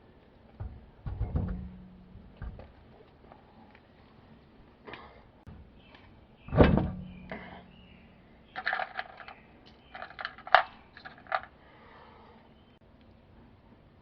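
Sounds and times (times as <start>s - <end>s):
heavy metallic knock with ring: 6.5s - 8.0s.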